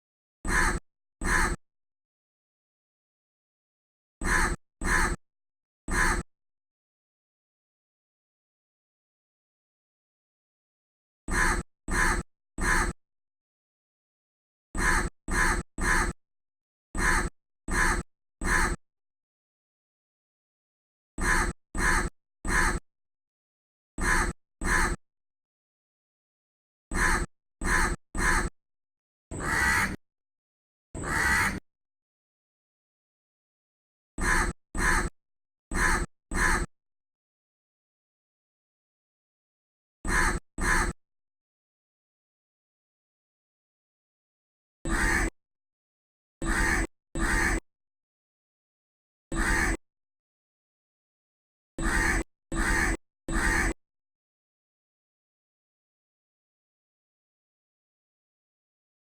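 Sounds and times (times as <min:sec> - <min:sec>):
crow cawing: 0:00.5 - 0:01.6, 0:04.2 - 0:05.2, 0:05.9 - 0:06.2, 0:11.3 - 0:12.9, 0:14.8 - 0:16.2, 0:17.0 - 0:18.8, 0:21.2 - 0:22.8, 0:24.0 - 0:25.0, 0:26.9 - 0:28.5, 0:29.4 - 0:30.0, 0:31.0 - 0:31.6, 0:34.2 - 0:35.1, 0:35.7 - 0:36.7, 0:40.0 - 0:41.0, 0:44.9 - 0:45.3, 0:46.4 - 0:47.6, 0:49.4 - 0:49.7, 0:51.8 - 0:53.7.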